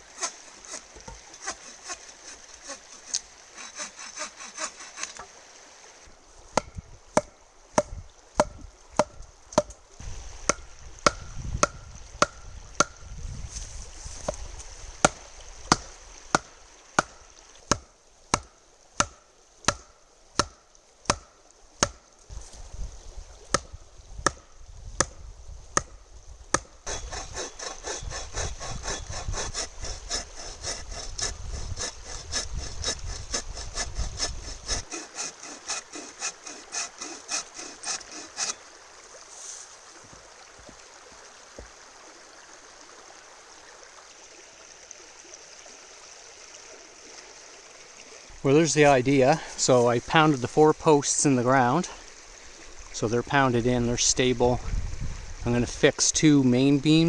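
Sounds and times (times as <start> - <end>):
blows driving wooden posts: 0.0 - 5.4, 6.4 - 38.6
saw cutting wood: 0.0 - 5.4, 6.6 - 13.0, 15.0 - 22.0, 25.8 - 38.6
river water running: 0.0 - 57.0.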